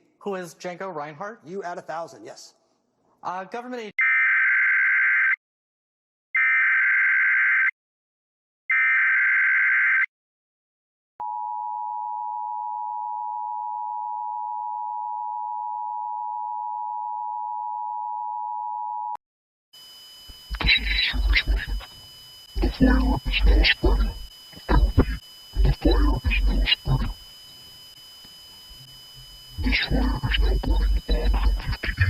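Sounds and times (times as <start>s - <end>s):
digital data header bursts: 19.8s - 32.0s
steady two-tone attention signal: 19.8s - 32.0s.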